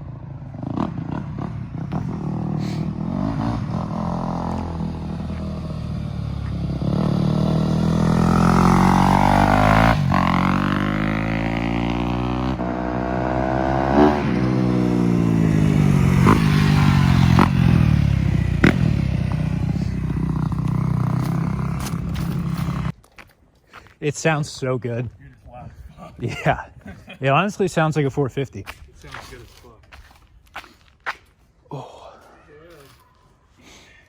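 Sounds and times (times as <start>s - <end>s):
motorcycle engine revving: 0.0s - 23.0s
motorcycle passing by: 0.0s - 23.0s.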